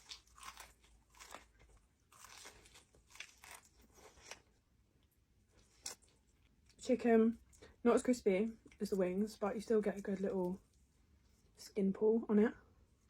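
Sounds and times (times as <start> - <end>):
chewing crispy food: 0.0 - 7.8.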